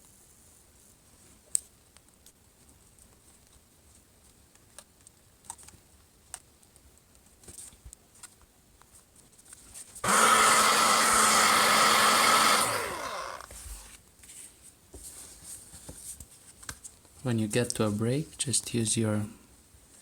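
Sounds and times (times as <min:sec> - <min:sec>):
hot-air blower rushing: 0:10.0 - 0:13.8.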